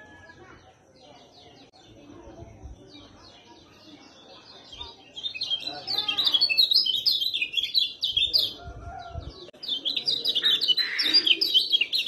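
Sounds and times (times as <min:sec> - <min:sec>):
bird singing high chirps: 0:02.7 - 0:12.0.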